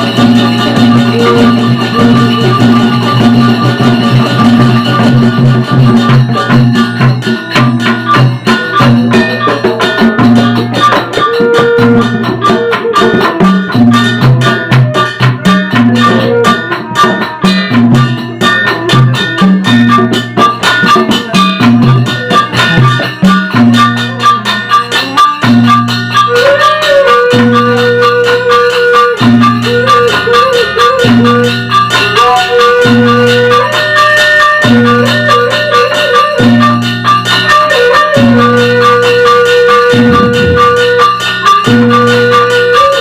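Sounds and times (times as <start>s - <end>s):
drums and struck percussion: 0.0s - 43.0s
gamelan ensemble playing: 0.0s - 43.0s.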